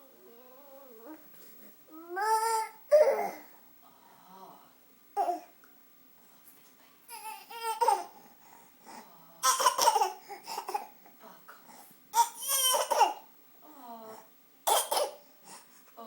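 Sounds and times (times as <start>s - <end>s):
baby whining: 1.9s - 3.5s, 7.1s - 8.2s, 12.2s - 14.2s
baby fake coughing: 9.4s - 10.9s, 12.2s - 13.2s, 14.7s - 15.2s.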